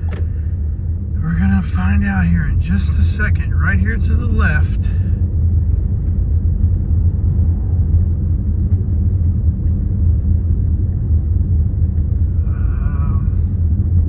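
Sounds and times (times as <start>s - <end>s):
car road and engine noise: 0.0s - 14.0s.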